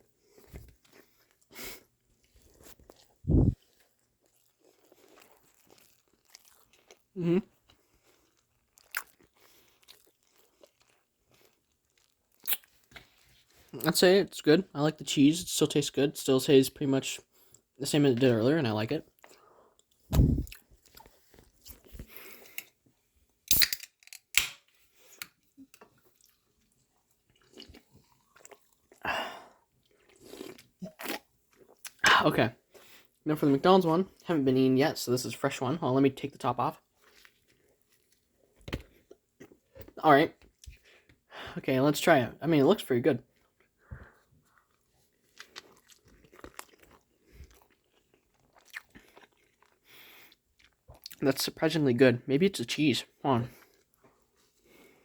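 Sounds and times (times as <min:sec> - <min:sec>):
person chewing: 0:00.0 - 0:13.9, 0:19.1 - 0:22.8, 0:24.9 - 0:33.2, 0:36.9 - 0:41.0, 0:43.3 - 0:51.2, 0:53.5 - 0:55.0
low thump: 0:20.1 - 0:20.5.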